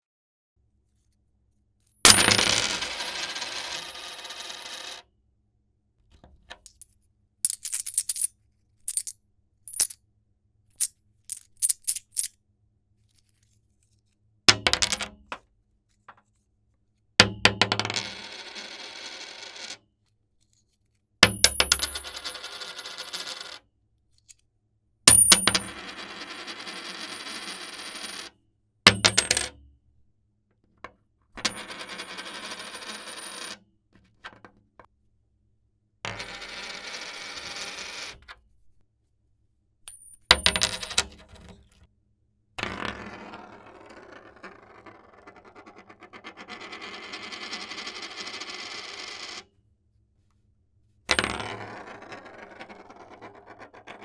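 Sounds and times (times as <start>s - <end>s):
coins pouring and jingling: 2.1s - 3.0s, 7.5s - 8.3s, 8.9s - 10.0s, 11.3s - 12.3s, 25.1s - 25.7s
single coins clicking down: 2.1s - 3.0s, 7.5s - 8.3s, 8.9s - 10.0s, 11.3s - 12.3s, 21.3s - 23.4s, 25.1s - 25.8s.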